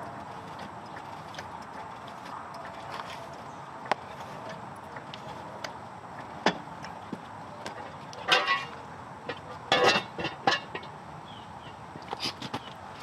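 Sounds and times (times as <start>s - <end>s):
hand tools clanking on metal: 7.6s - 11.0s.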